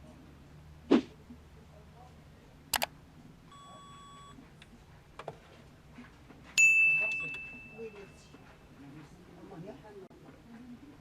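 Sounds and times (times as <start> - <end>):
faint short beep: 3.5 - 4.4.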